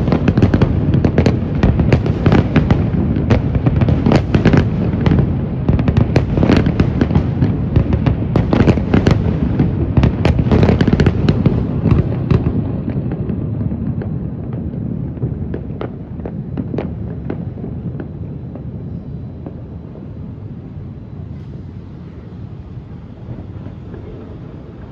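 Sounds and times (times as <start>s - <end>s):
fireworks bangs and crackling: 0.0s - 24.9s.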